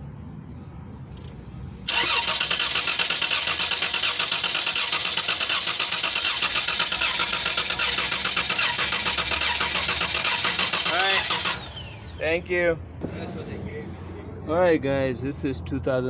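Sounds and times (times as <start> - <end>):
fast even engine ticking: 1.9 - 12.4
car engine running: 1.9 - 12.7.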